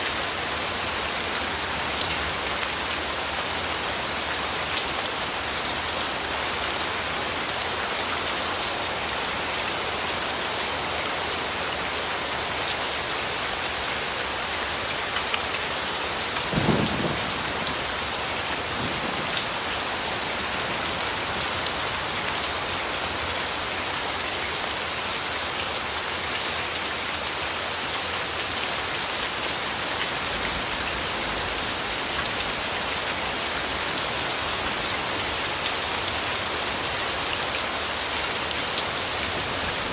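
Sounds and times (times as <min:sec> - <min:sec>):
steady rain hiss: 0:00.0 - 0:39.9
thunder clap and rumble: 0:16.5 - 0:17.7.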